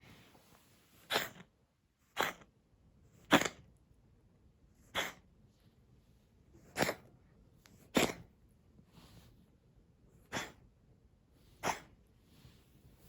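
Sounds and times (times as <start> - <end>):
cat coughing: 1.1 - 1.4, 2.2 - 2.4, 3.2 - 3.7, 4.9 - 5.2, 6.6 - 7.1, 7.9 - 8.3, 10.3 - 10.6, 11.6 - 11.9.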